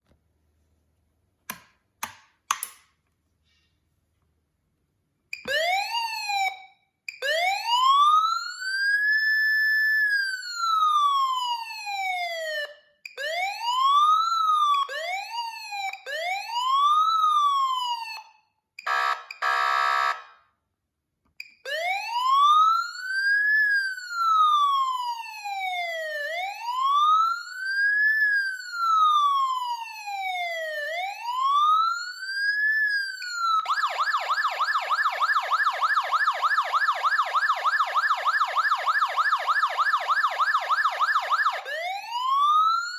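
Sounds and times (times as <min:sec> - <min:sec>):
short clicks: 0:01.5 - 0:02.9
buzzy horn blast: 0:18.9 - 0:20.2
electronic siren wailing: 0:18.9 - 0:20.2, 0:21.7 - 0:42.9.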